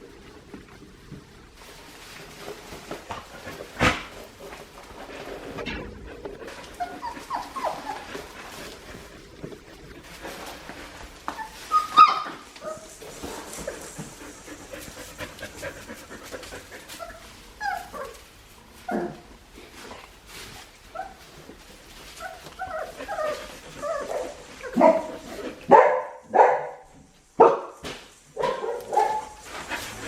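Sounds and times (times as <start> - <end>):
puppies whimpering and yipping: 6.1 - 9.1, 11.1 - 14.8, 16.7 - 19.2, 20.6 - 25.3.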